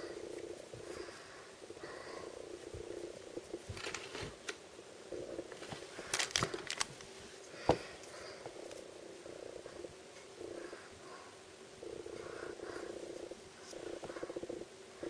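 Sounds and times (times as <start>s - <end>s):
plastic packaging crinkling: 5.6s - 7.0s.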